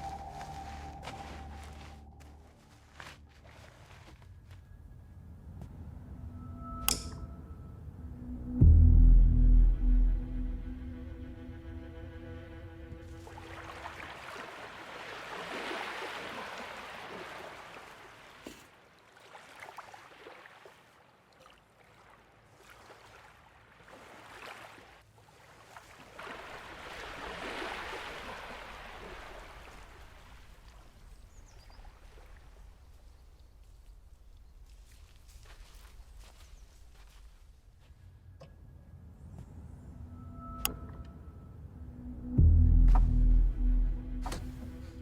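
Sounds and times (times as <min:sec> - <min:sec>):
water sloshing and trickling: 0:12.9 - 0:37.4.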